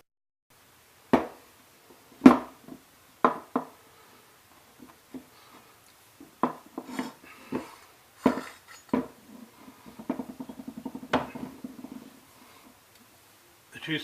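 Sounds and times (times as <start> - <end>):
steel parts clinking: 8.2 - 9.0.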